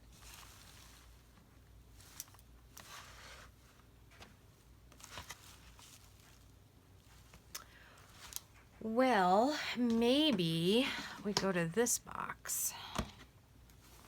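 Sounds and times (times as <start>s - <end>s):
paper rustling: 0.1s - 8.7s.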